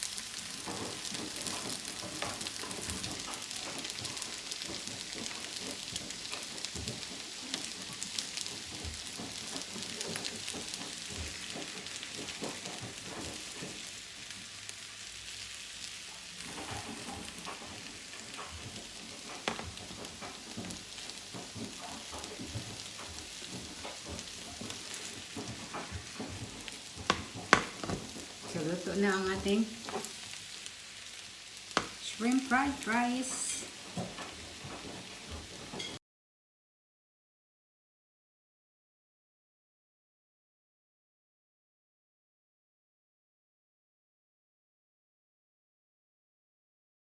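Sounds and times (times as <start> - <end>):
fried rice sizzling in a pan: 0.0 - 36.0
spatula scraping a pan: 0.0 - 36.0.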